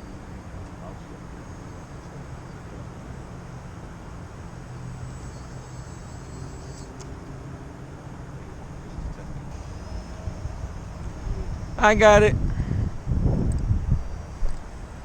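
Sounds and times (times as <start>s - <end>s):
model airplane motor whine: 0.0s - 7.2s, 8.9s - 11.8s, 12.4s - 15.0s
wind rumble on microphone: 8.5s - 15.0s.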